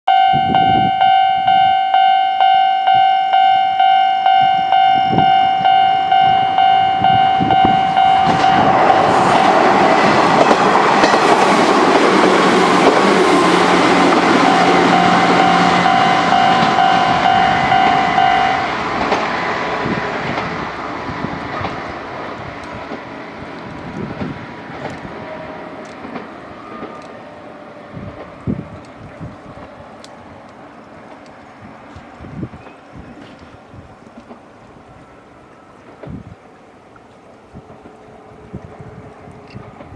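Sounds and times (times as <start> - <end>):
level-crossing warning bell ringing: 0.1 - 19.8
train wheels clattering over rail joints: 8.2 - 16.8, 18.7 - 27.3.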